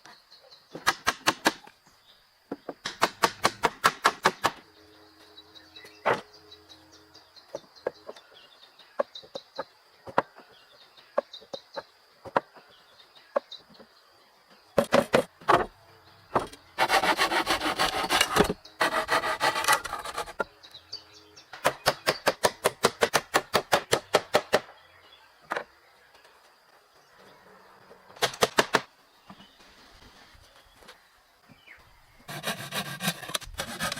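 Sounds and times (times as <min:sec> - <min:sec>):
hand tool scraping on wood: 0:16.8 - 0:20.4, 0:32.3 - 0:33.9.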